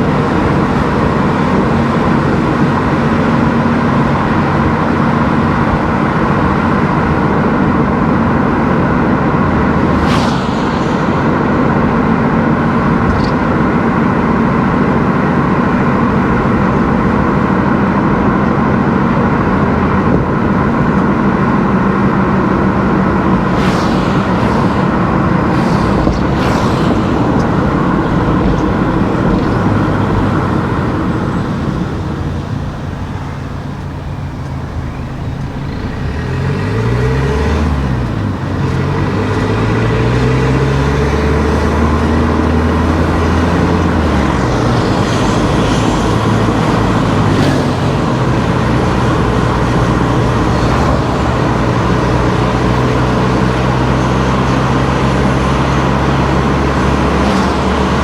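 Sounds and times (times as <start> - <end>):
car engine running: 0.0 - 41.0
tyre and road noise: 0.0 - 58.0.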